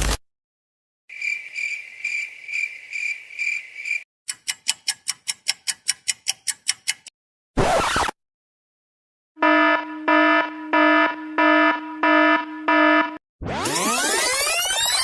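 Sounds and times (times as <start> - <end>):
cricket chirping: 1.1 - 4.0.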